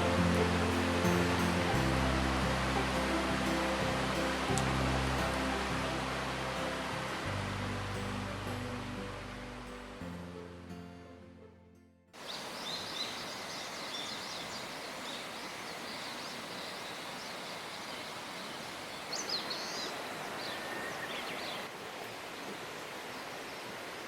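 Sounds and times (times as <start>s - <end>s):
small birds chirping: 12.2s - 21.7s.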